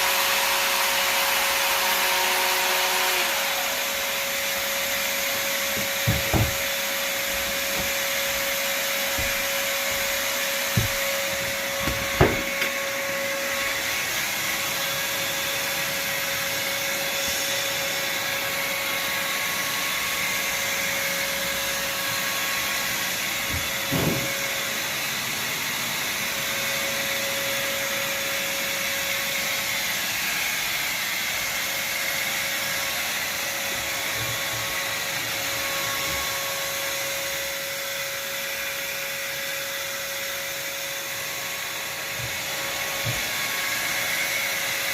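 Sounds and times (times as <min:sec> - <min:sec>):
drywall sander whirring: 0:00.0 - 0:44.9
short knocks: 0:05.7 - 0:08.4, 0:09.1 - 0:12.8.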